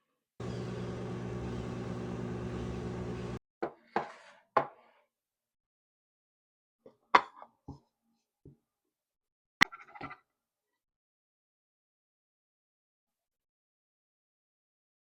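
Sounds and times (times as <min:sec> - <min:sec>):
microwave oven humming: 0:00.4 - 0:03.4.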